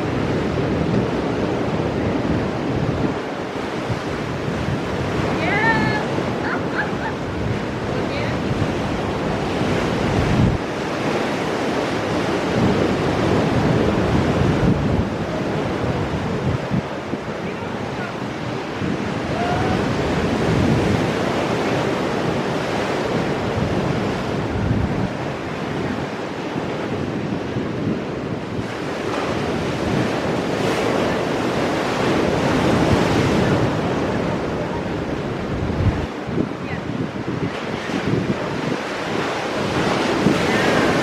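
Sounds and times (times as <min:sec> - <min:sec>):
ocean waves breaking over rocks: 0:00.0 - 0:41.0
wind buffeting microphone: 0:00.0 - 0:41.0.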